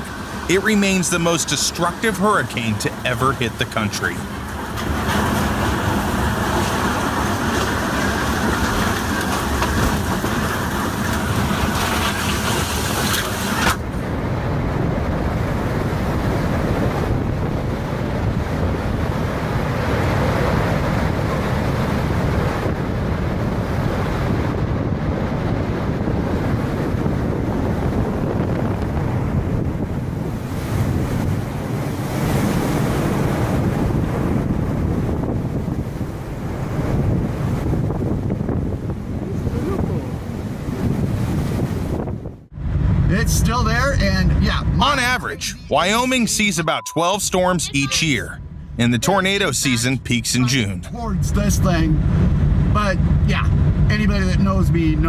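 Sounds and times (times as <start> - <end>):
wind buffeting microphone: 4.2 - 44.8, 50.9 - 55.0.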